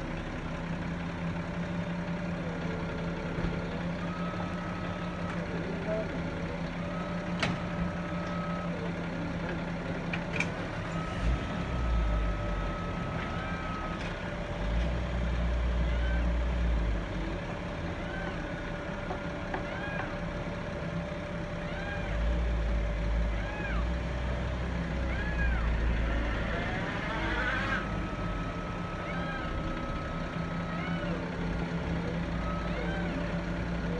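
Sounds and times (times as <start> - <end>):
fire truck engine rumble: 0.0 - 33.9
rising and falling siren calls: 15.8 - 33.9
long steady siren tone: 24.9 - 33.9.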